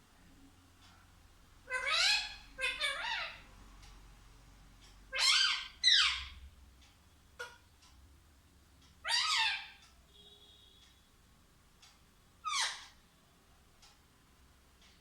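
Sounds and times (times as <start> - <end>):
parrot calling: 1.6 - 3.4, 5.1 - 6.4, 9.0 - 9.8, 12.4 - 13.0.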